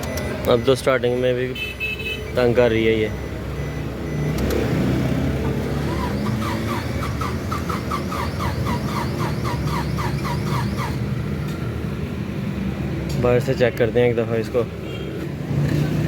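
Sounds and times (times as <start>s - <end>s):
car engine running with misfire: 5.9s - 11.6s.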